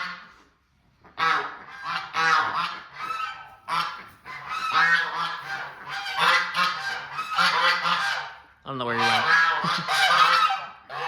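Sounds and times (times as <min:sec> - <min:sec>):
geese honking: 0:01.1 - 0:11.0.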